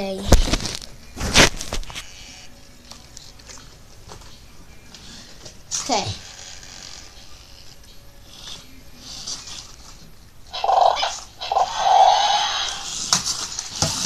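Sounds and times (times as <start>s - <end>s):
toy dinosaur electronic growl: 10.5s - 13.0s.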